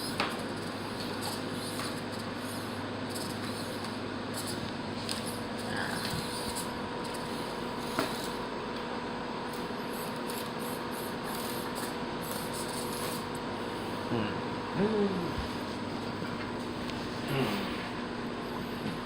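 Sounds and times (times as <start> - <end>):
small electric motor whining: 0.0 - 8.4, 9.5 - 14.0.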